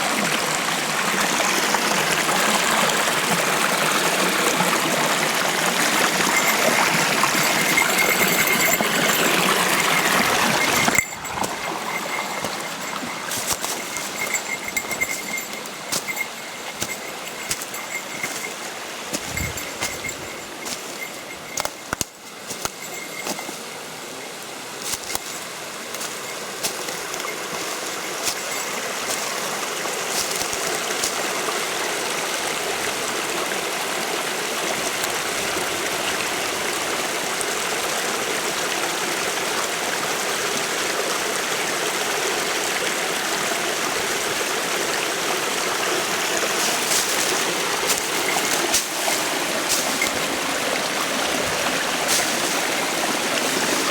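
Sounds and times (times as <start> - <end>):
waterfall rushing: 0.0 - 35.4, 36.0 - 53.9.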